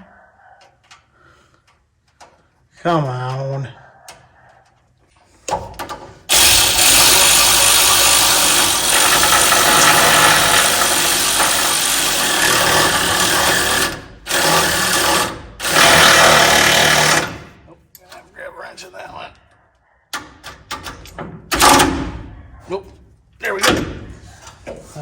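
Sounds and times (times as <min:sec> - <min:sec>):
electric ratchet wrench running: 0:06.3 - 0:17.6.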